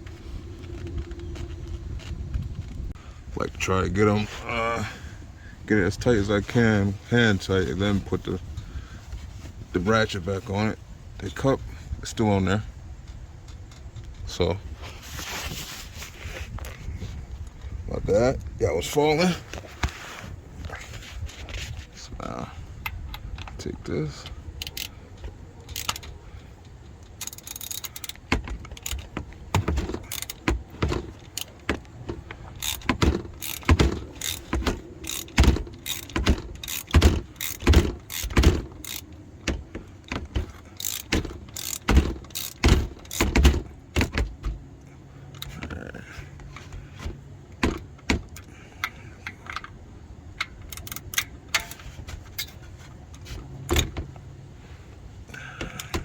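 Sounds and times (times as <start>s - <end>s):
ratchet clicking: 24.6s - 25.0s, 25.6s - 26.2s, 26.9s - 43.7s, 50.4s - 52.6s.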